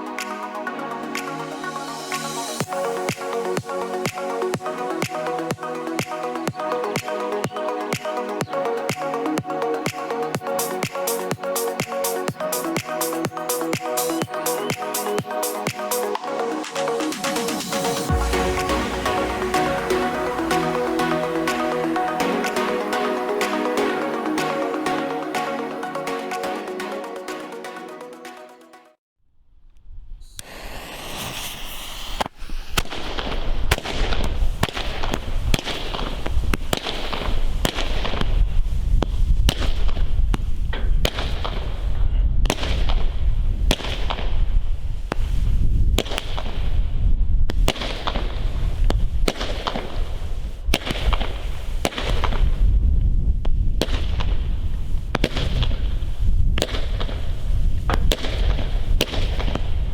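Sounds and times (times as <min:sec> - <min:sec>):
hissing firework effects: 0:01.2 - 0:09.3, 0:09.9 - 0:21.2, 0:30.2 - 0:43.0
firework launch pops: 0:30.4 - 0:38.4.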